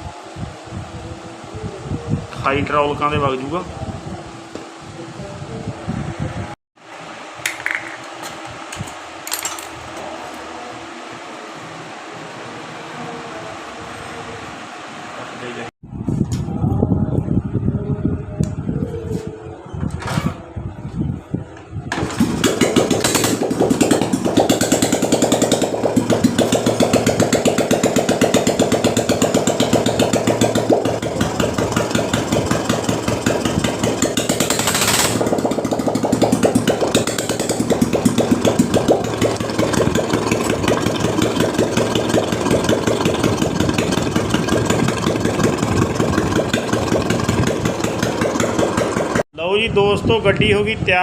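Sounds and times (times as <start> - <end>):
motorcycle engine starting and idling: 21.9 - 49.2.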